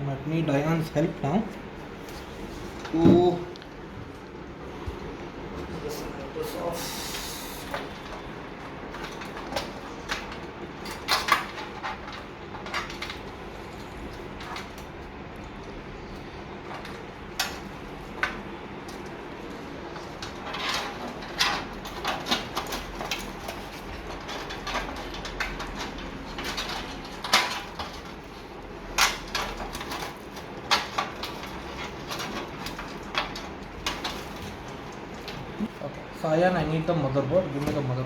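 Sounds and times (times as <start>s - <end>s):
computer case panels clattering: 16.6s - 35.6s.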